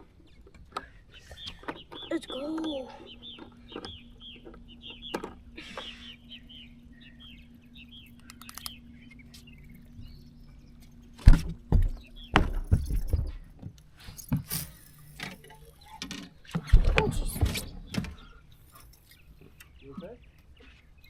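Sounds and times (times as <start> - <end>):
low hum: 2.9 - 19.7
sharp knocks and rattling: 11.1 - 18.8.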